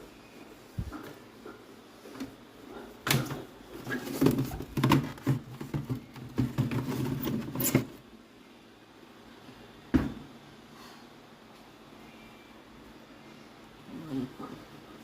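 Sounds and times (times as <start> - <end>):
objects knocking and clattering: 3.0 - 8.0.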